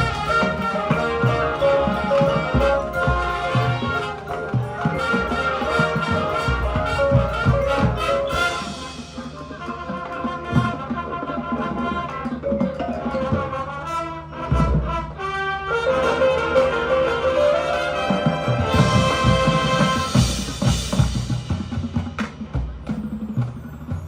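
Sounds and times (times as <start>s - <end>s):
heavy low drum hit: 0.0s - 9.8s, 18.3s - 23.0s
marching band playing: 0.0s - 24.0s.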